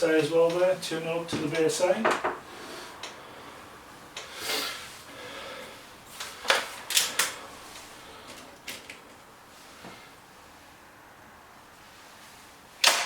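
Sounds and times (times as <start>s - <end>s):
air rifle clicks and clacks: 12.8s - 13.0s.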